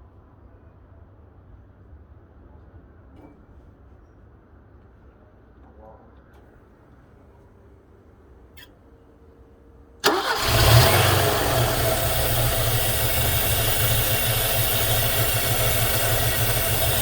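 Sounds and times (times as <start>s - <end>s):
car engine starting and idling: 10.0s - 17.0s.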